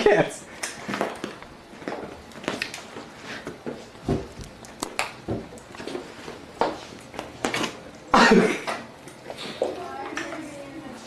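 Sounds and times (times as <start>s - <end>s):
heavy thumps on floor: 5.2s - 5.5s.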